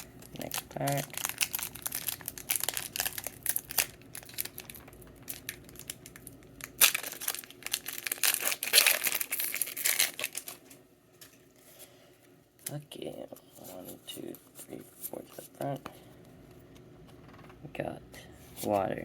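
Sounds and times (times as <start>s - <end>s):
foil wrapper crinkling and tearing: 0.0s - 10.8s.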